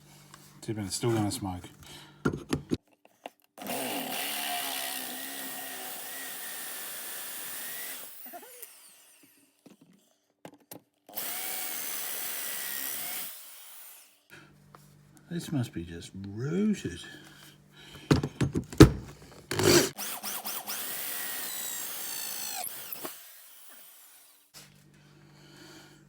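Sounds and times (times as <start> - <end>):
drill motor winding down: 3.6 - 9.5, 11.2 - 14.2, 19.5 - 24.5
electric drill squealing in steel: 19.5 - 24.4.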